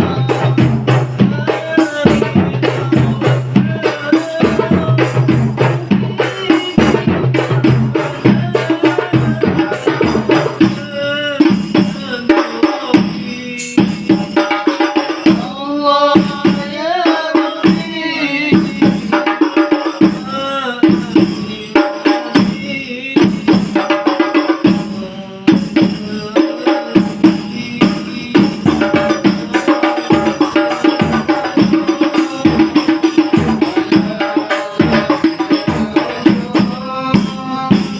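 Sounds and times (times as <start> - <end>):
frame drum ensemble playing: 0.0 - 37.9.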